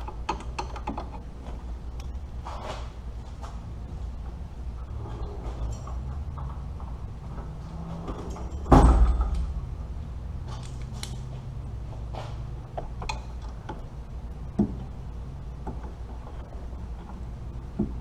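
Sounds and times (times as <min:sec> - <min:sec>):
light clicks and knocks of tools: 0:00.0 - 0:02.2, 0:12.1 - 0:13.9
steady low hum: 0:00.0 - 0:18.0.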